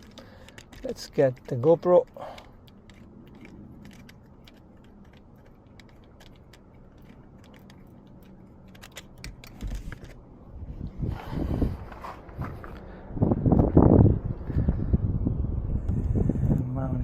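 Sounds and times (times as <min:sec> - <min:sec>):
small gear clicking and rattling: 0:00.0 - 0:10.2.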